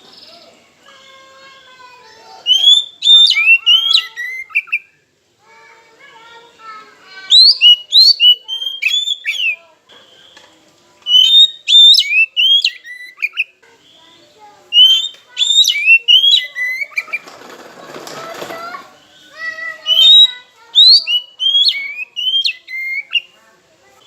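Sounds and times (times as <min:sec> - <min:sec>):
bird chatter: 0:00.0 - 0:05.1, 0:06.0 - 0:23.7
bird singing whistled phrases: 0:02.4 - 0:05.0, 0:07.2 - 0:14.1, 0:14.7 - 0:17.2, 0:19.1 - 0:23.4.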